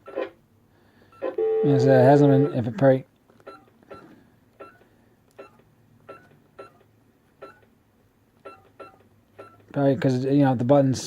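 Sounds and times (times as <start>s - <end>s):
phone button clicks and beeps: 8.4s - 9.6s.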